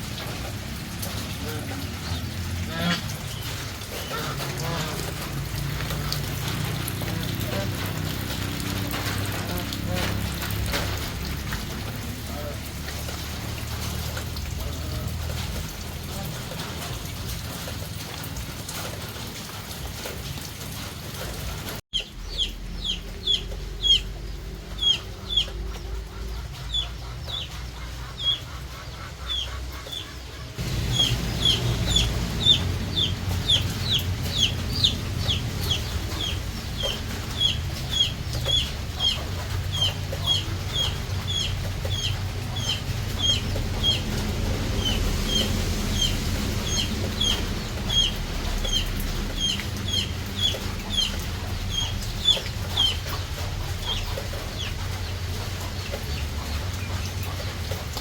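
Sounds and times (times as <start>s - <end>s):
chick peeping: 22.0s - 58.0s.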